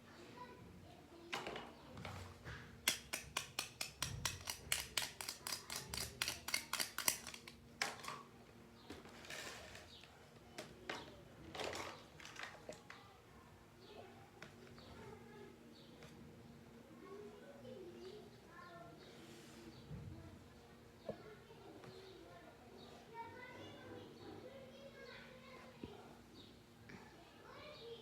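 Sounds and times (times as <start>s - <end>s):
plastic toy pieces clicking: 2.8s - 8.2s.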